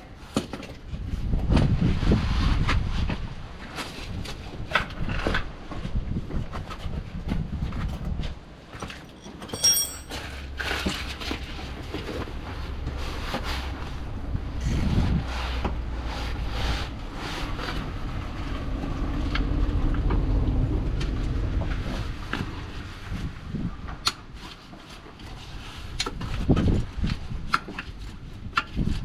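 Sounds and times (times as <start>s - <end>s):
hand tools scraping and clattering: 8.8s - 10.3s
ringing metal clink: 9.0s - 10.2s.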